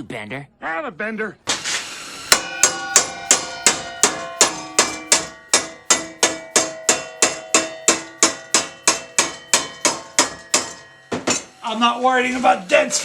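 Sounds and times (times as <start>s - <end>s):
hammer striking steel plate: 1.5s - 11.8s.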